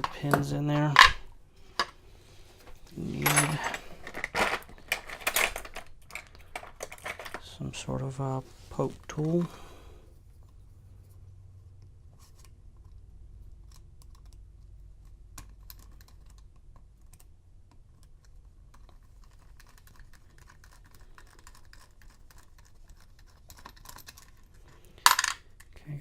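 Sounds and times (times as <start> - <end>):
metal tools clicking and scratching: 2.6 - 7.7, 19.2 - 25.8.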